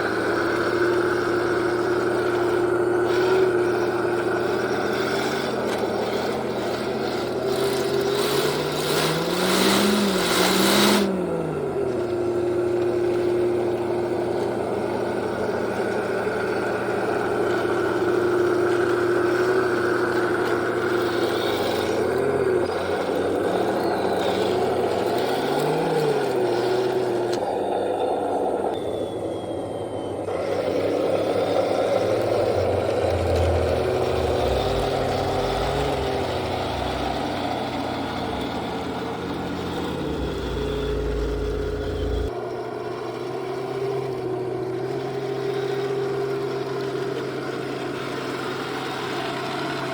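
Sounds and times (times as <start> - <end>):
toy tank motors whining: 0.0 - 49.9
low rumble: 32.0 - 42.3.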